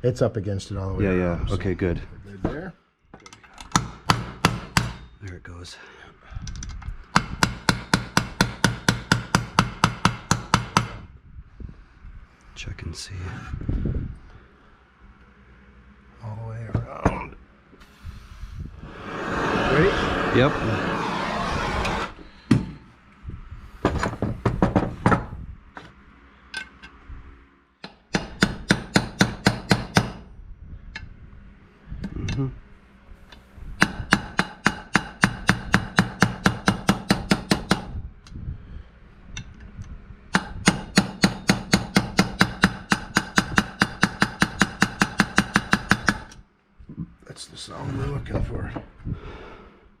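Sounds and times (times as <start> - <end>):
hammer tapping on metal: 3.7 - 5.1, 7.1 - 11.0, 40.3 - 46.3.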